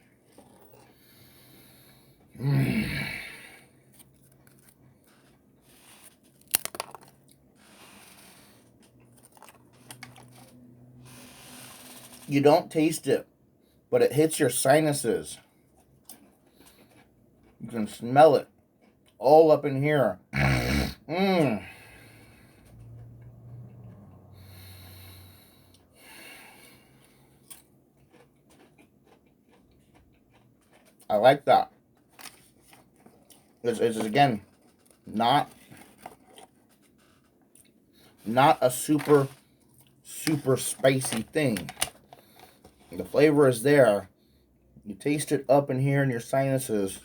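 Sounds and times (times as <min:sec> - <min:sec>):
person crunching potato chip: 0:04.0 - 0:08.4, 0:09.1 - 0:10.5, 0:27.4 - 0:31.2
breath through nose: 0:24.3 - 0:27.4.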